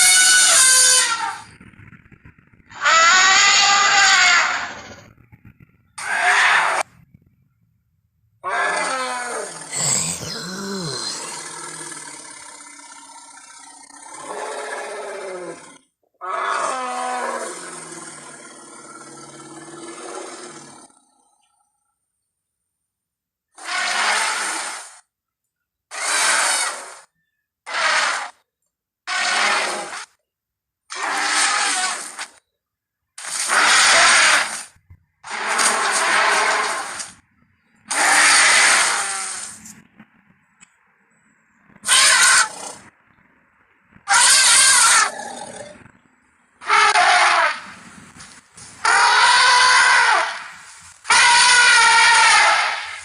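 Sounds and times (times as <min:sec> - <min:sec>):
harsh mammoth call bursts: 0:00.0 - 0:01.5, 0:02.7 - 0:04.9, 0:06.0 - 0:06.9, 0:23.6 - 0:25.0, 0:25.9 - 0:27.0, 0:27.7 - 0:28.4, 0:29.1 - 0:30.1, 0:30.9 - 0:32.3, 0:33.2 - 0:37.2, 0:37.9 - 0:39.6, 0:41.8 - 0:42.9, 0:44.1 - 0:45.5, 0:46.6 - 0:47.8, 0:48.8 - 0:53.0
animal roar-like calls: 0:02.7 - 0:06.9, 0:08.4 - 0:21.5, 0:33.2 - 0:37.2, 0:37.9 - 0:39.6, 0:41.8 - 0:42.9, 0:44.1 - 0:46.0, 0:46.6 - 0:47.8, 0:51.1 - 0:53.0.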